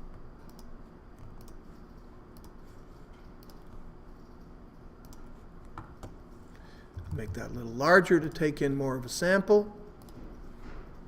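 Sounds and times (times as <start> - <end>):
low steady hum: 0.0 - 11.0
computer mouse clicks: 0.4 - 2.6, 3.3 - 6.2, 10.0 - 10.3.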